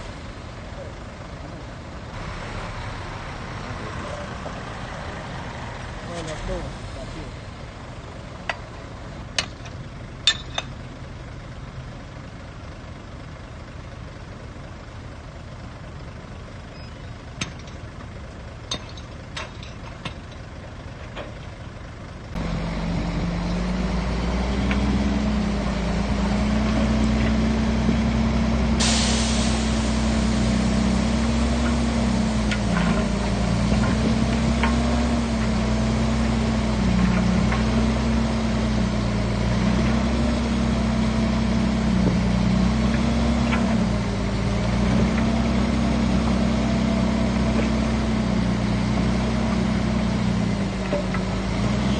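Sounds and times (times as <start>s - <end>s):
diesel machinery rumble: 0.0s - 51.9s
loud diesel engine: 0.0s - 51.9s
metallic clanks: 9.4s - 10.8s, 18.7s - 20.5s
air brake hiss: 28.8s - 30.1s.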